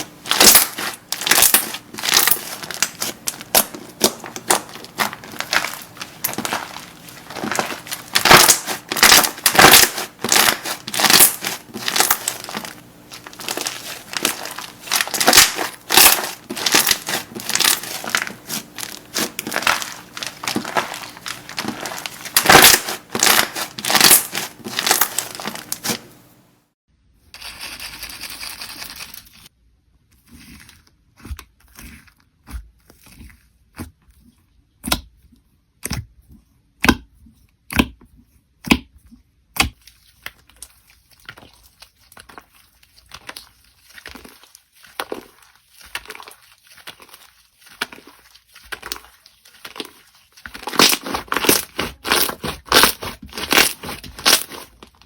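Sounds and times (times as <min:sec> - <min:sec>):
slime crackling and popping: 0:00.0 - 0:26.1, 0:39.6 - 0:55.0.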